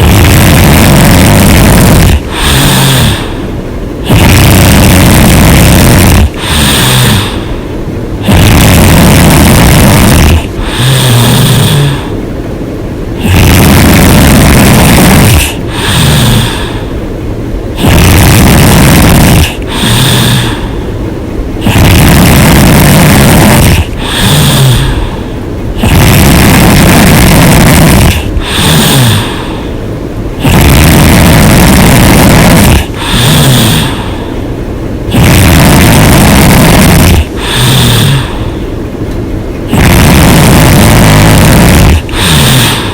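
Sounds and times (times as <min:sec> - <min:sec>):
woman snoring: 0:00.0 - 0:07.6, 0:08.2 - 0:12.1, 0:13.2 - 0:16.9, 0:17.7 - 0:20.9, 0:21.6 - 0:29.8, 0:30.4 - 0:34.4, 0:35.1 - 0:38.6, 0:39.7 - 0:42.9.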